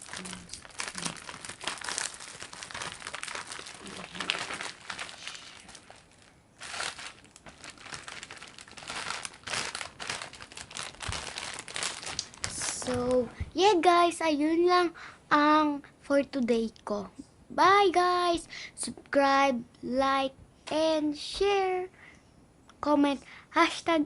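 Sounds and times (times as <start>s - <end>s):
toy crinkling and rustling: 0.0s - 13.3s.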